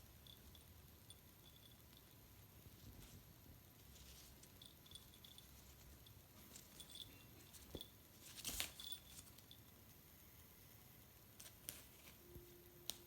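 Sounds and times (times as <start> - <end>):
cat scratching and rustling: 2.6 - 9.7.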